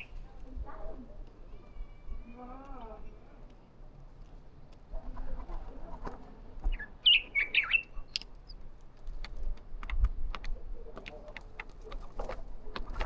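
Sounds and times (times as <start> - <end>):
bird chirping: 6.7 - 8.6.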